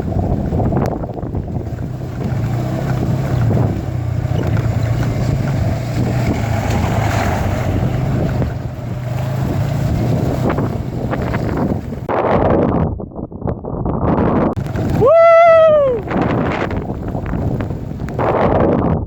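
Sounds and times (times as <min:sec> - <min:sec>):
motorcycle engine running: 0:00.0 - 0:12.1, 0:14.6 - 0:18.4
wind buffeting microphone: 0:00.0 - 0:19.0.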